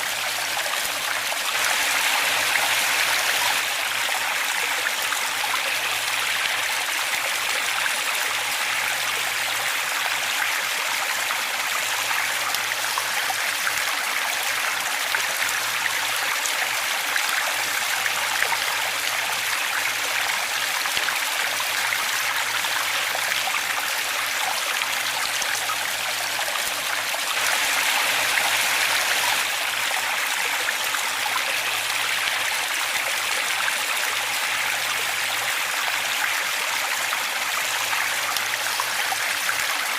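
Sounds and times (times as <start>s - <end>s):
waterfall rushing: 26.2s - 31.8s.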